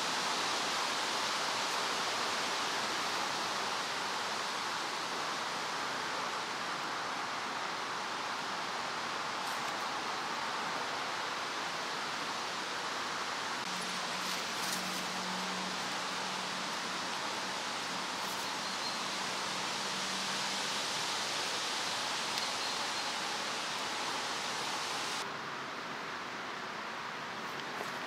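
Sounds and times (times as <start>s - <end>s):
steady outdoor rushing noise: 0.0s - 28.0s
faint high ticks: 22.3s - 22.6s.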